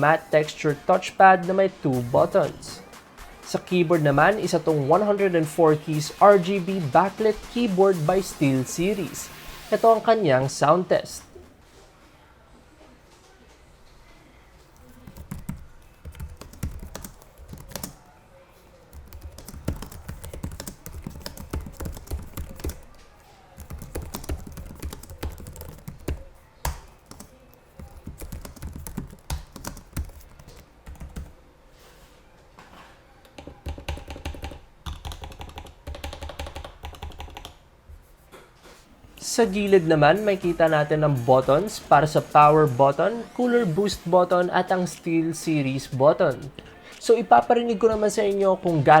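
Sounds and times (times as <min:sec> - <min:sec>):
laptop keyboard typing: 0:14.7 - 0:18.0, 0:18.9 - 0:31.4, 0:33.4 - 0:37.6.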